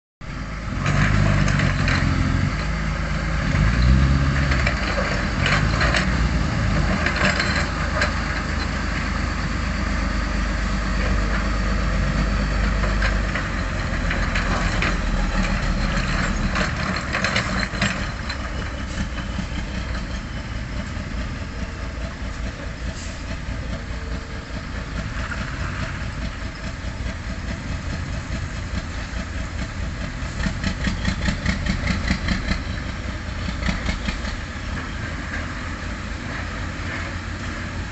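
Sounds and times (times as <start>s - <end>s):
heavy truck engine running: 0.2s - 37.9s
rattling and knocking: 12.9s - 18.7s.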